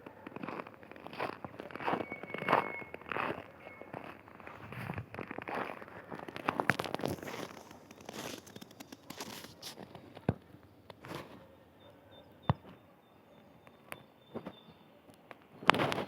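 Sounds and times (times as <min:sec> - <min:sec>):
footsteps on forest floor: 0:00.3 - 0:10.0
twigs snapping: 0:06.3 - 0:09.9.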